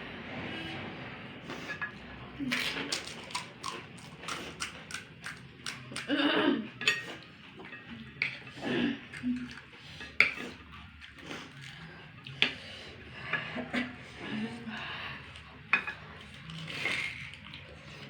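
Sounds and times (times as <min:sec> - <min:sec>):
plates and bowls clinking: 0:06.8 - 0:11.0, 0:15.7 - 0:17.4.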